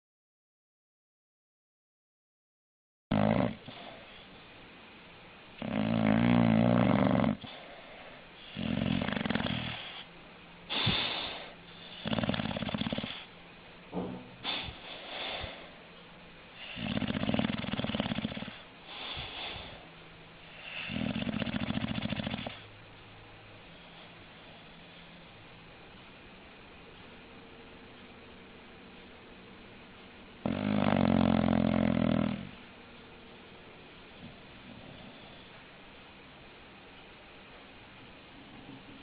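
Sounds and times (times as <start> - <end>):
dog snoring: 3.1 - 4.2, 5.6 - 10.1, 10.7 - 13.3, 16.6 - 19.8, 20.4 - 22.7, 30.4 - 32.6, 34.2 - 35.6.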